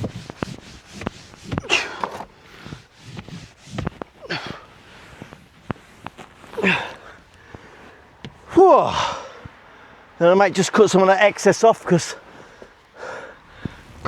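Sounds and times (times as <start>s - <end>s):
hand rubbing carpet: 0.0s - 14.0s
person exhaling strained: 6.5s - 10.0s.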